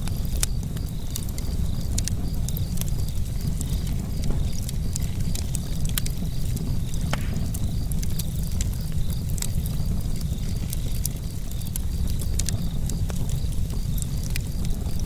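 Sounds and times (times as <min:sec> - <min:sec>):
campfire crackling: 0:00.0 - 0:15.0.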